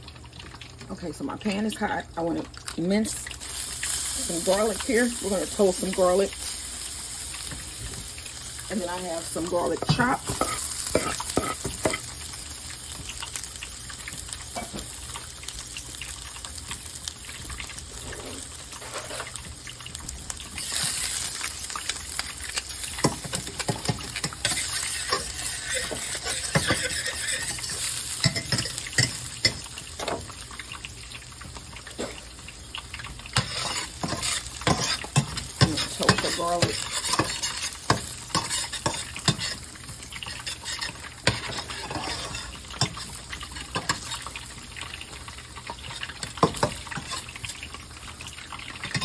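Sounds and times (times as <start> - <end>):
hot oil sizzling in a pan: 0.0 - 49.0
utensil clicking against pan: 32.5 - 49.0.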